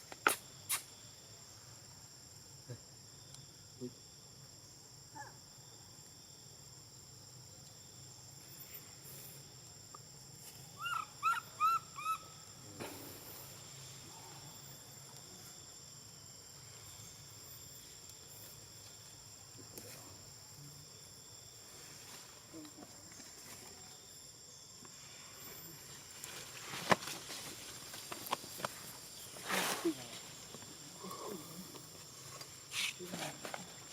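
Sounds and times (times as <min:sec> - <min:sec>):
high insect drone: 0:00.0 - 0:33.9
monkey squeaky calls: 0:10.8 - 0:12.3.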